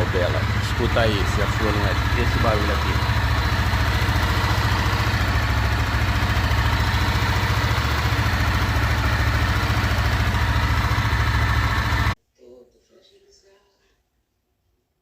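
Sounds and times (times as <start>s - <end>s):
motorcycle engine idling with clatter: 0.0s - 12.2s.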